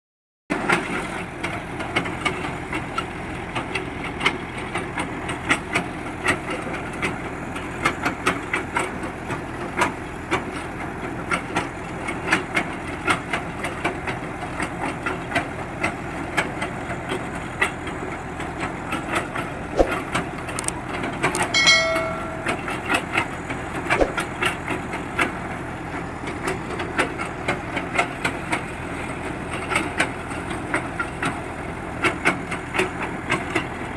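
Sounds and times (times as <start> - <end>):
high-pitched tone: 21.4 - 22.8.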